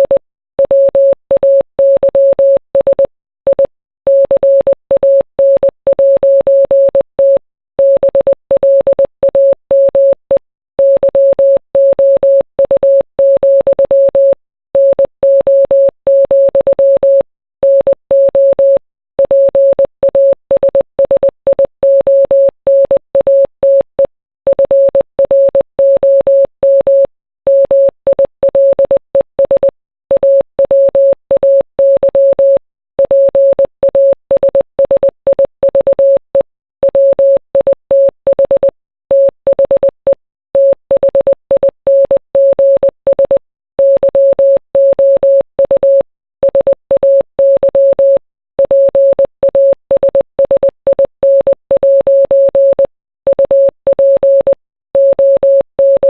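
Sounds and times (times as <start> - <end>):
morse code beeps: 36.9 - 56.0.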